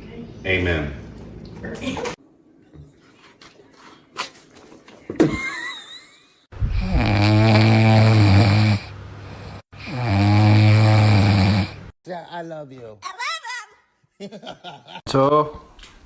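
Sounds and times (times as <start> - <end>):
dog snoring: 6.8 - 11.9.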